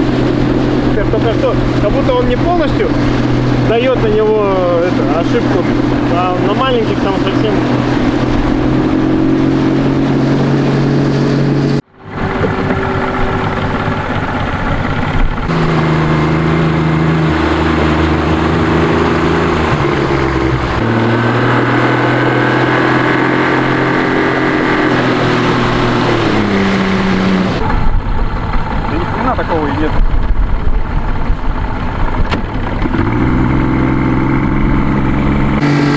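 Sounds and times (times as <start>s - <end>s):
outboard motor running: 0.0s - 35.9s.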